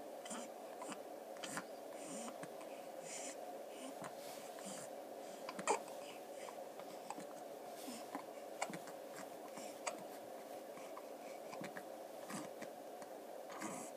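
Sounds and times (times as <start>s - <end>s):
steady background hum: 0.0s - 13.9s
babies hiccuping: 5.5s - 5.9s.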